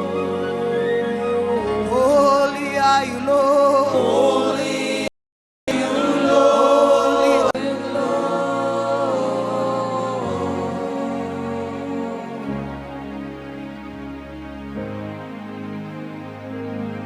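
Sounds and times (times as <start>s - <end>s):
voices singing worship song: 0.0s - 5.1s, 5.7s - 13.1s
sustained music: 5.7s - 17.0s.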